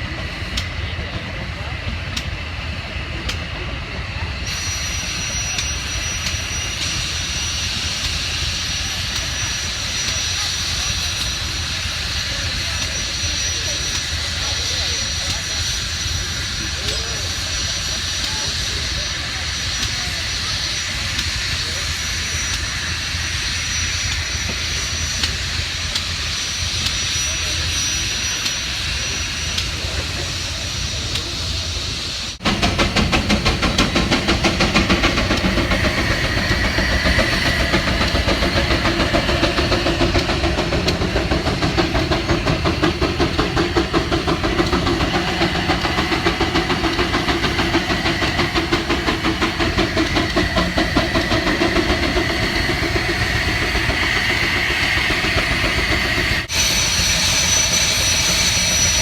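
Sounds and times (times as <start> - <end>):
machine running with hissing beat: 32.3 - 59.0.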